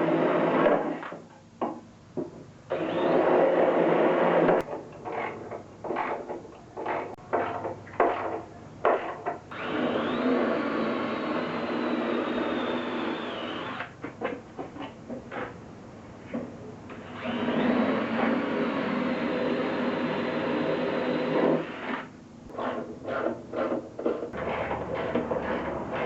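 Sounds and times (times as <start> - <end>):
power drill drilling into wood: 9.5 - 13.9, 17.1 - 22.0.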